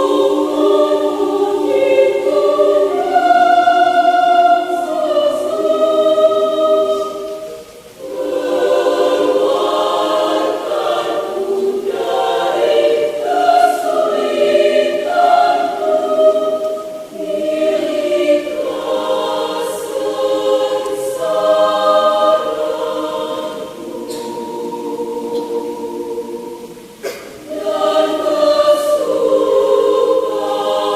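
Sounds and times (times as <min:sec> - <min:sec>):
mixed choir singing: 0:00.0 - 0:30.9.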